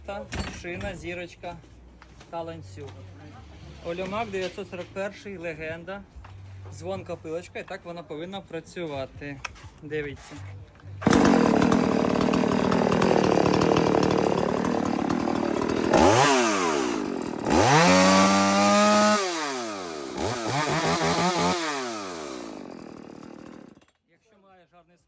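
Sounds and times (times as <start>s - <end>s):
chainsaw revving: 11.0s - 23.8s.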